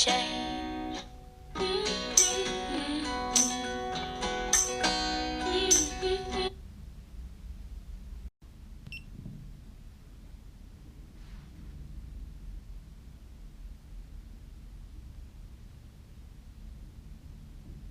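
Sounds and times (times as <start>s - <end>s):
acoustic guitar strumming chords: 0.0s - 6.5s
faint low background hiss: 0.0s - 17.9s.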